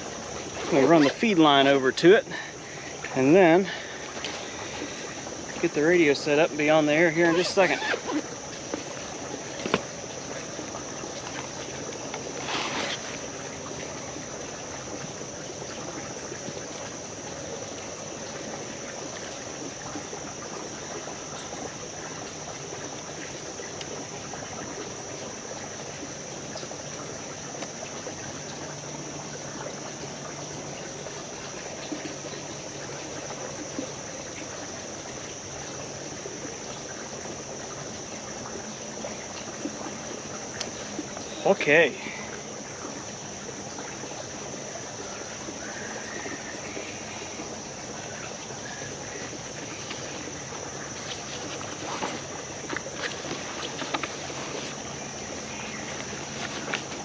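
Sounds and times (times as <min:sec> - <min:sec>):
creek water trickling: 0:00.0 - 0:57.0.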